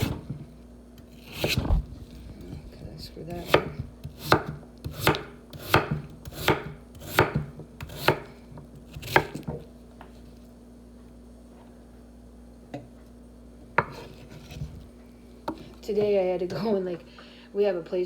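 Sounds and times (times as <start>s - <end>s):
knife chopping on cutting board: 0.0s - 0.4s, 1.0s - 2.8s, 3.4s - 9.7s, 13.8s - 14.8s
faint steady hum: 0.0s - 18.0s.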